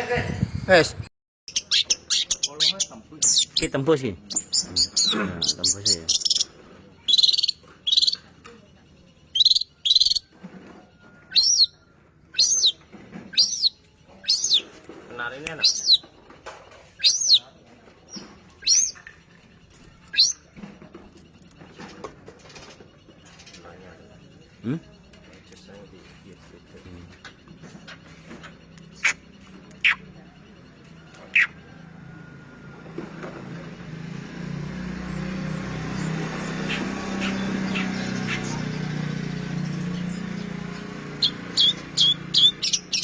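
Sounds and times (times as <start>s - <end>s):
vehicle engine approaching: 3.0s - 43.0s
shrike whistled calls: 9.3s - 10.3s, 11.2s - 14.7s, 17.0s - 17.5s.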